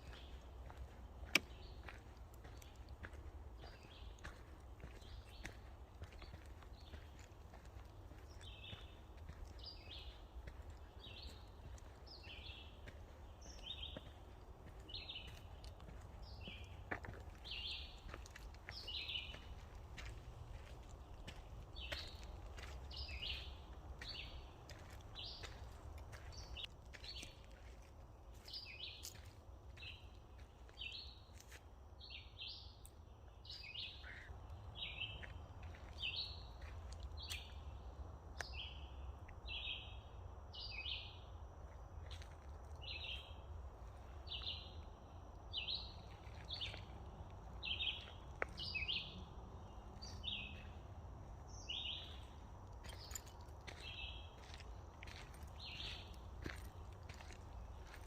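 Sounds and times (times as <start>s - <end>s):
bird chirping: 8.1s - 27.4s.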